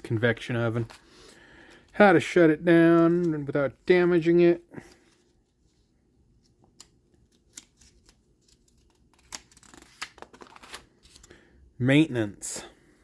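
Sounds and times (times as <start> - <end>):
paper pages rustling: 2.7 - 11.4.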